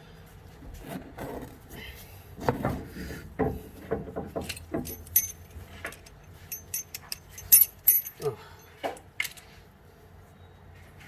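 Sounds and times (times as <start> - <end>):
ringing metallic taps: 4.4 - 8.3
metal hand tools clinking: 4.4 - 9.4.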